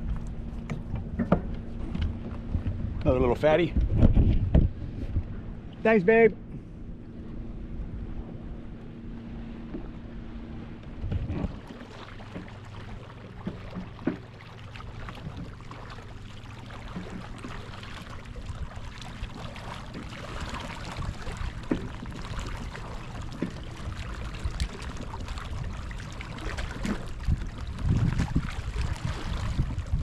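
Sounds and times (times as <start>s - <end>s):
light knocks on boat: 0.0s - 3.1s, 3.7s - 5.3s, 9.6s - 10.1s, 10.7s - 15.7s, 16.8s - 17.6s, 19.1s - 25.7s, 26.5s - 28.4s
water lapping against kayak hull: 0.0s - 30.0s.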